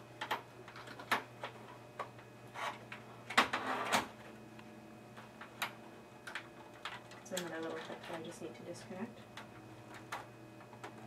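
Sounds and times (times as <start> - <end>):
cables scraping and rustling: 6.3 - 11.0.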